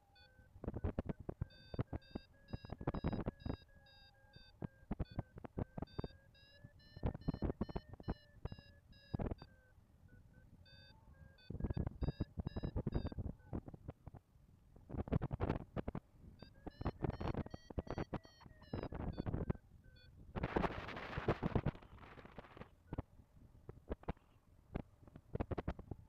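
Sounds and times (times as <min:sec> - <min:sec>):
variometer beeping: 0:01.1 - 0:13.5, 0:16.4 - 0:20.1.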